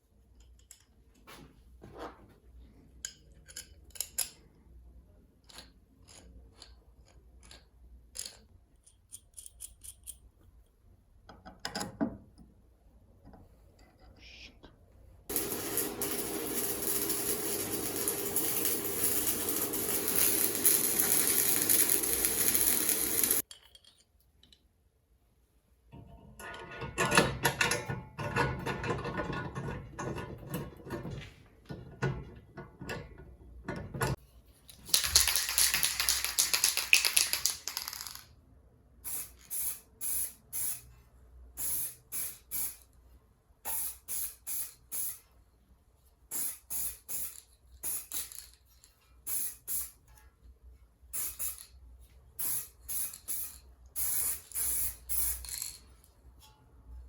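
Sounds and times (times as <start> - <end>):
hissing spray: 15.3 - 23.4.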